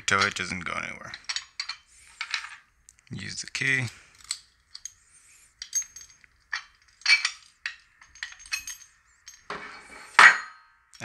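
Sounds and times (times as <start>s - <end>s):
metal lock clicks and clinks: 5.6s - 9.5s.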